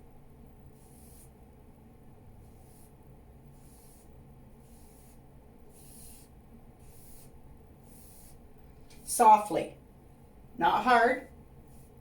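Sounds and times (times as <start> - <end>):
paintbrush strokes on canvas: 0.6 - 1.5, 2.3 - 9.5, 11.6 - 12.0.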